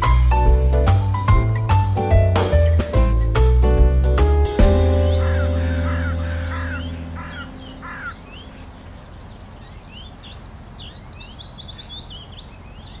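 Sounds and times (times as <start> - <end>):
birds chirping: 4.6 - 13.0
outdoor background noise: 4.7 - 13.0.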